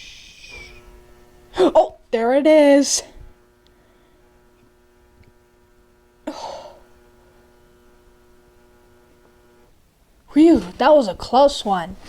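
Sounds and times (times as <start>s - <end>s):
refrigerator humming: 0.0s - 12.0s
person gasping: 6.3s - 6.8s.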